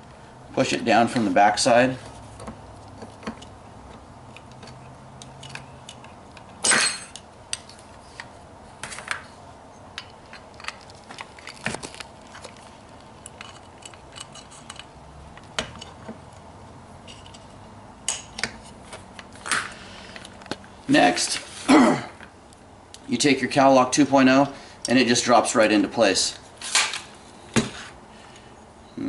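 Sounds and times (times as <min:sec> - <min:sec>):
sharp metal clack: 0:06.6 - 0:07.2
metallic clicks and clinks: 0:13.2 - 0:16.0.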